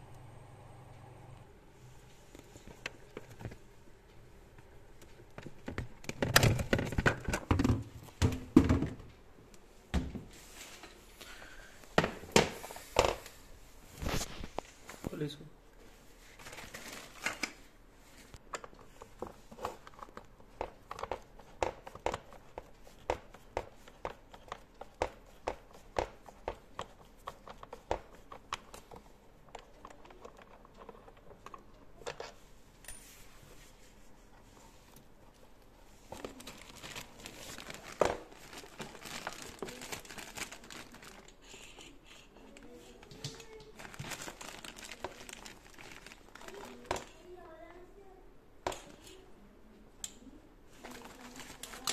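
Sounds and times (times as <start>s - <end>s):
crinkling tearing rustles: 36.1s - 41.5s, 42.6s - 47.2s, 50.8s - 51.9s.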